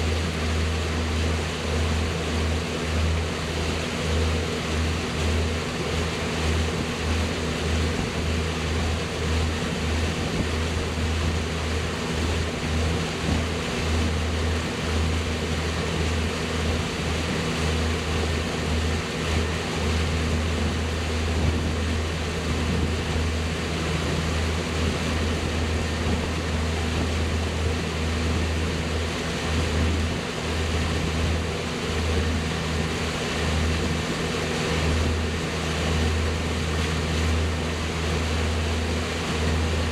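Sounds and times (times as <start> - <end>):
motorboat engine running: 0.0 - 39.9
wind and water rush: 0.0 - 39.9.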